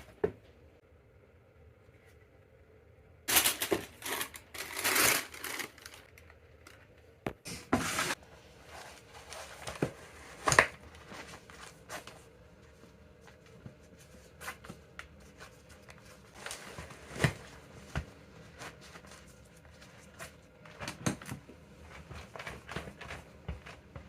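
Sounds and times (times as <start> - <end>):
paper packaging crinkling: 3.3 - 6.8.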